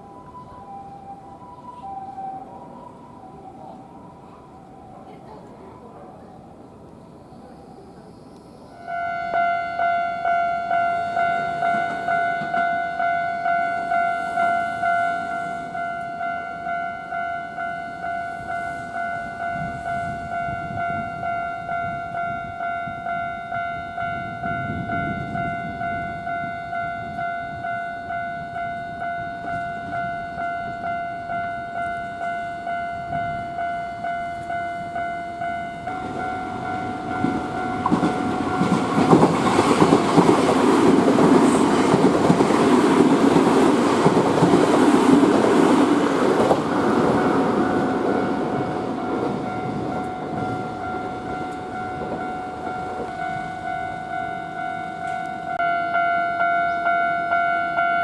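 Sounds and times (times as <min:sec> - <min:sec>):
railroad crossing bell ringing: 0:00.0 - 0:06.5, 0:07.1 - 0:58.0
electric train running: 0:23.9 - 0:58.0.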